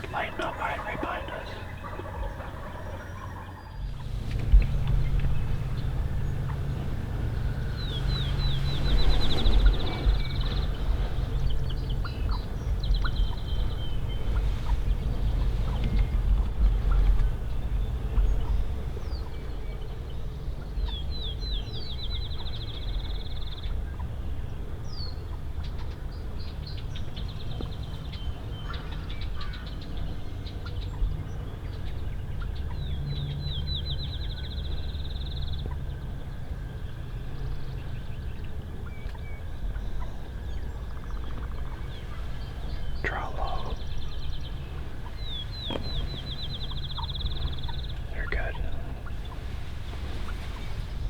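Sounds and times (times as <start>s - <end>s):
wild turkeys gobbling: 0.0s - 7.4s, 38.8s - 43.8s
steady low rumble: 0.0s - 51.0s.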